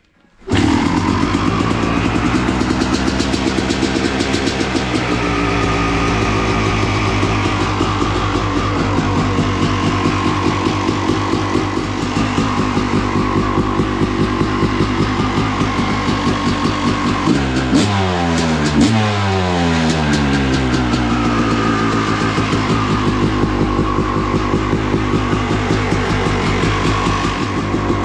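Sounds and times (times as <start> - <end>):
dirt bike engine revving: 0.4 - 28.0.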